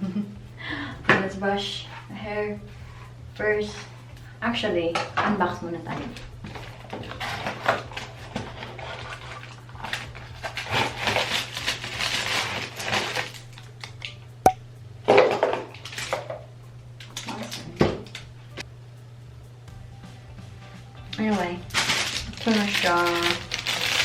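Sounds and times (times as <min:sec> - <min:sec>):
steady low hum: 0:00.0 - 0:24.0
packaging rustling: 0:06.4 - 0:14.0, 0:21.6 - 0:24.0.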